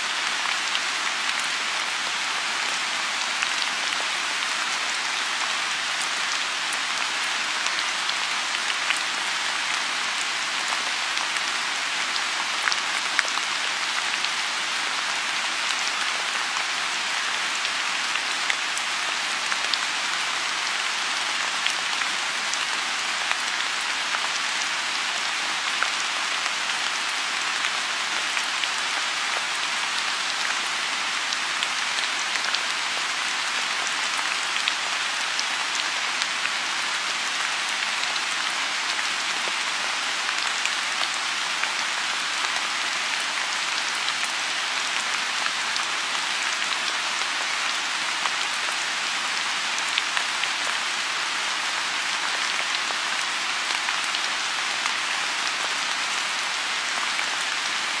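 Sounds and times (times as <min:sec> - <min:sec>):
rain falling on a pond: 0:00.0 - 0:58.0.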